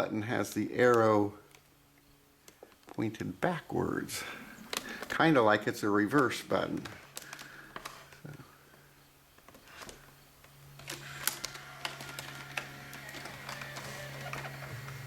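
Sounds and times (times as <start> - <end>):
tape mechanism humming: 0.0 - 15.0
small mechanical clicks: 9.4 - 15.0.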